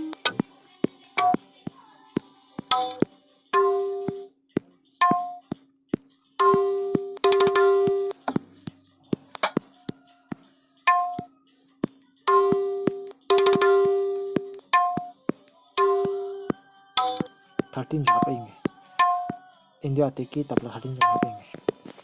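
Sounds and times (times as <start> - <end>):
tabla strokes: 6.4 - 11.3, 12.3 - 15.2.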